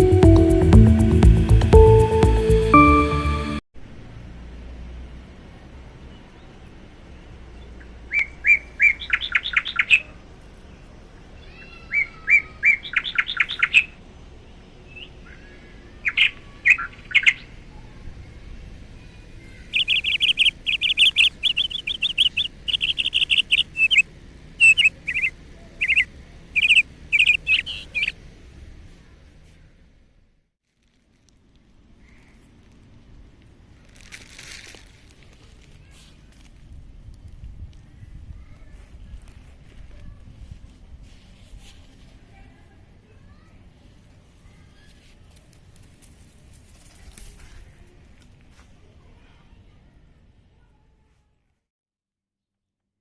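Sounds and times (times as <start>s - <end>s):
bird chirping song: 7.6s - 10.2s, 11.4s - 14.0s, 14.8s - 17.6s, 19.6s - 28.2s.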